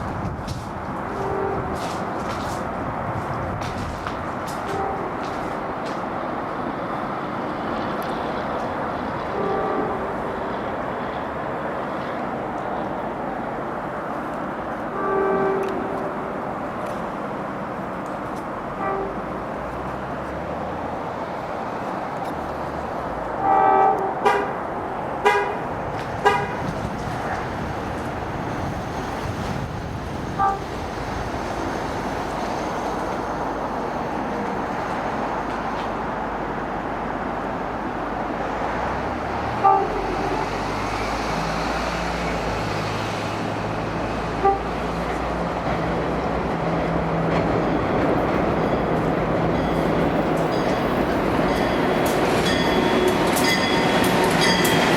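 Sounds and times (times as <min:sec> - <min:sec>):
train rumble: 0:00.0 - 0:54.9
train horn blasts: 0:01.1 - 0:02.5, 0:04.6 - 0:05.6, 0:09.2 - 0:10.3, 0:14.9 - 0:16.4, 0:18.8 - 0:19.4, 0:23.4 - 0:24.6, 0:25.2 - 0:25.6, 0:26.2 - 0:26.7, 0:30.4 - 0:30.7, 0:39.6 - 0:40.6, 0:44.4 - 0:44.9.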